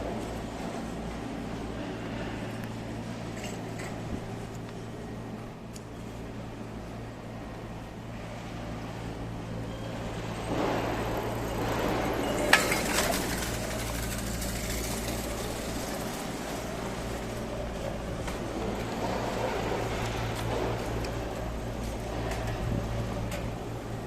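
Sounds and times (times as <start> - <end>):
road vehicle passing: 10.0 - 24.0.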